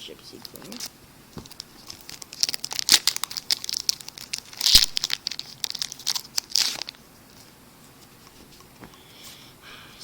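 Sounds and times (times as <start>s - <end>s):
card pack wrapper tearing and crinkling: 0.4s - 7.0s.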